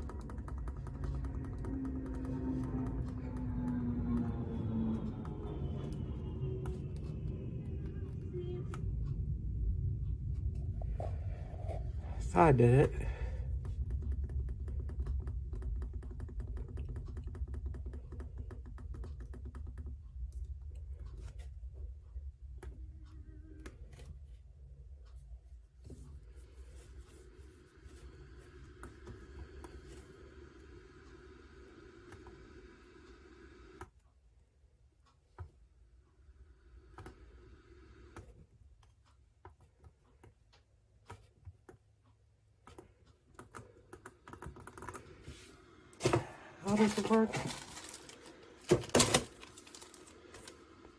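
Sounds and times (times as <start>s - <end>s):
radio controls clicking: 0.0s - 6.0s
steady low hum: 0.0s - 50.9s.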